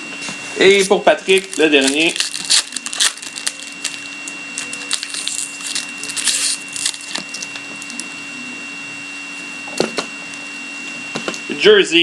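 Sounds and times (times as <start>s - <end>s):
cards being handled: 0.7s - 8.0s
foil wrapper crinkling: 0.7s - 8.0s.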